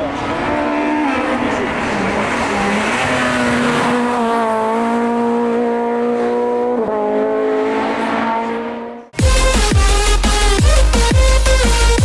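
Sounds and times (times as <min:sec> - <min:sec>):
race car engine at high revs: 0:00.0 - 0:09.2.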